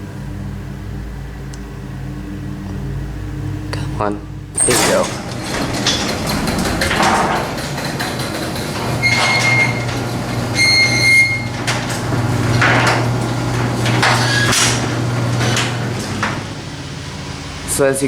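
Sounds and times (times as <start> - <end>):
garage door opener motor humming: 4.4 - 18.0
door rattles and squeaks: 4.6 - 18.0.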